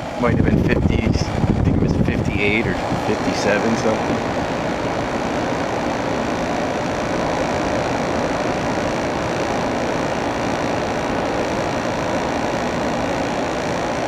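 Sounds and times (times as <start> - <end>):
air conditioner running: 0.0 - 14.0.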